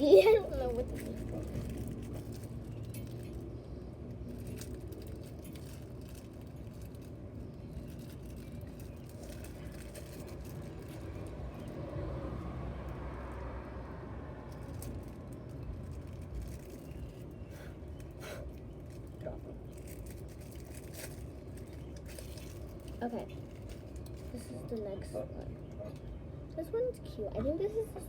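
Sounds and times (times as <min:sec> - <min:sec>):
low outdoor rumble: 0:00.0 - 0:28.0
plastic packaging crinkling: 0:18.7 - 0:24.4.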